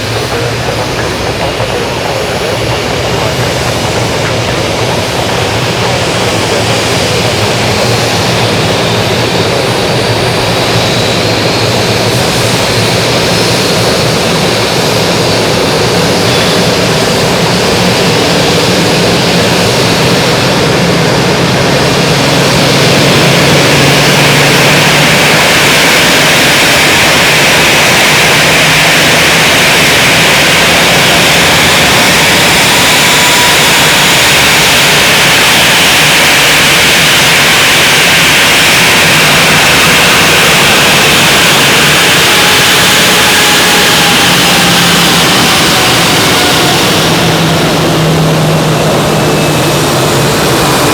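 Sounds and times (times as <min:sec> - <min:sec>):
jet engines rushing: 0:00.0 - 0:50.9.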